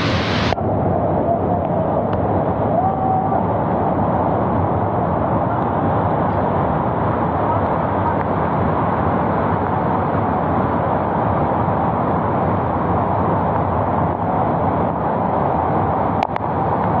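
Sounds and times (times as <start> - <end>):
river floodwater rushing: 0.0 - 0.6.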